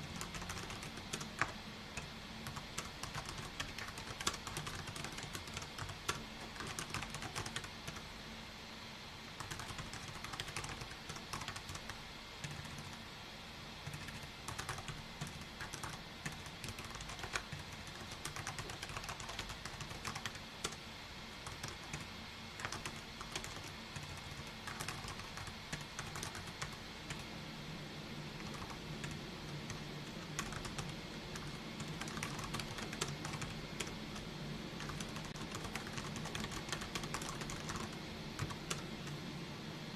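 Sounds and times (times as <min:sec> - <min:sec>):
steady low hum: 0:00.0 - 0:39.9
keyboard typing clicks: 0:00.1 - 0:08.0, 0:13.9 - 0:20.8, 0:21.4 - 0:27.2, 0:30.2 - 0:33.9, 0:34.8 - 0:38.8.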